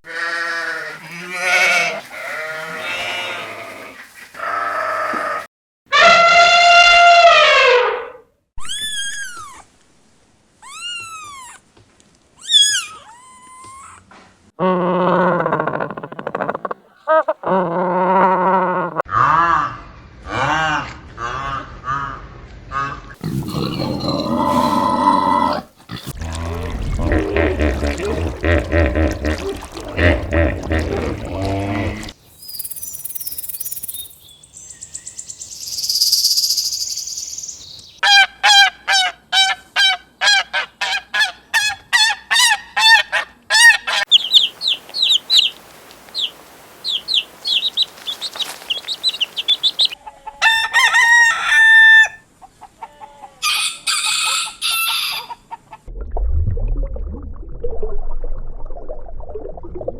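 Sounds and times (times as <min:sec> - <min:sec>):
small birds chirping: 0:32.1 - 0:38.0, 0:44.1 - 0:50.0
chickens clucking: 0:43.6 - 0:54.5
rooster crowing: 0:50.4 - 0:52.3, 0:53.4 - 0:55.4.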